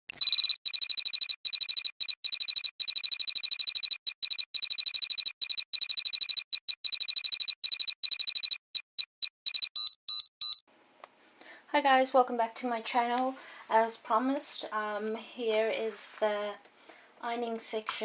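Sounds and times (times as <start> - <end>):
high-pitched electronic beeping: 0.0 - 10.6.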